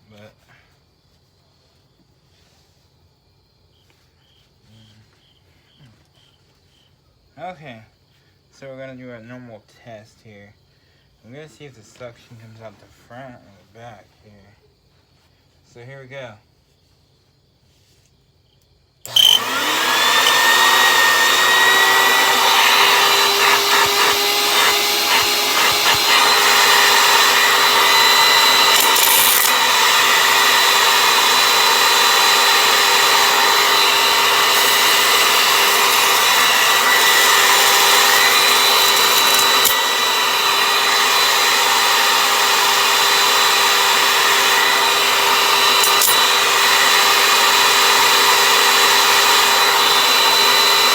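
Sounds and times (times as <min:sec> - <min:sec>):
vacuum cleaner running: 0:19.1 - 0:50.9.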